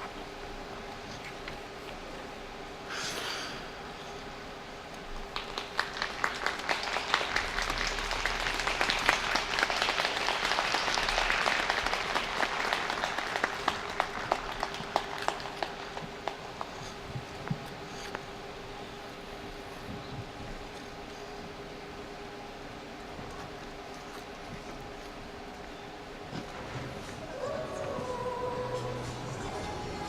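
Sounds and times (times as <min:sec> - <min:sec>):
audience applauding: 0:05.3 - 0:17.0.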